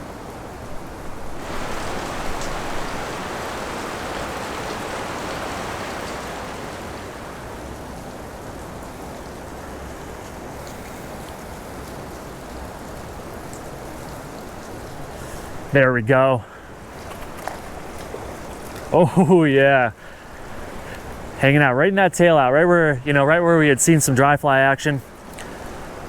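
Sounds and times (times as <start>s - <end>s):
river rapids rushing: 1.2s - 8.3s.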